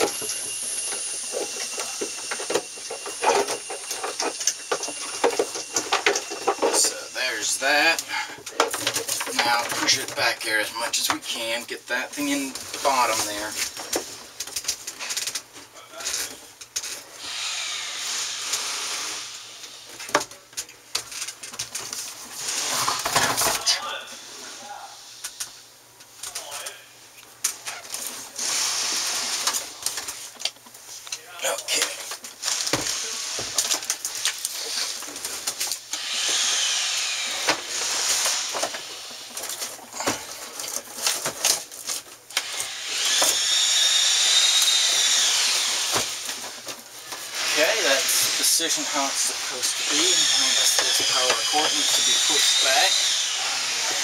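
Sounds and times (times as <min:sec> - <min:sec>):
air conditioner unit scraping: 0:00.0 - 0:15.4, 0:21.1 - 0:24.6, 0:27.6 - 0:31.0, 0:31.8 - 0:54.0
cordless screw gun whining: 0:17.2 - 0:19.8, 0:28.4 - 0:29.8, 0:32.4 - 0:35.1, 0:35.9 - 0:40.4, 0:42.3 - 0:54.0.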